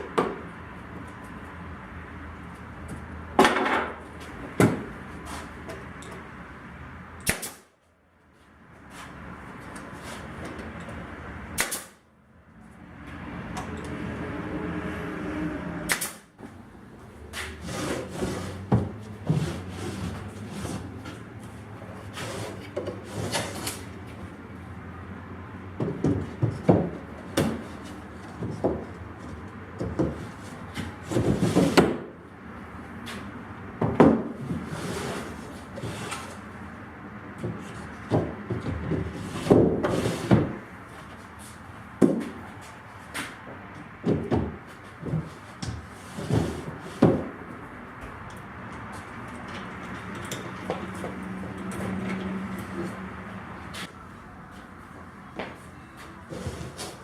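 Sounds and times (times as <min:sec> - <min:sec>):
wooden drawers sliding: 0:17.4 - 0:21.2, 0:38.1 - 0:40.6, 0:45.2 - 0:47.3, 0:56.2 - 0:57.0.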